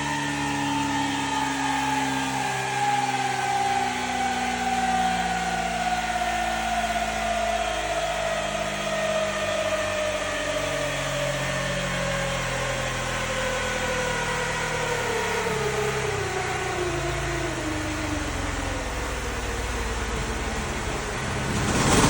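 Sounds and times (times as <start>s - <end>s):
motorcycle engine slowing: 19.0s - 22.0s
wind rush: 20.8s - 22.0s.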